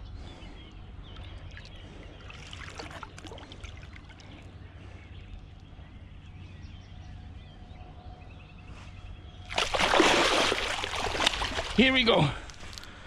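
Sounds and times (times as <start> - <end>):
water splashing and trickling: 1.1 - 4.6, 9.5 - 12.9
short splashes and crackles: 1.2 - 4.5, 9.5 - 13.0.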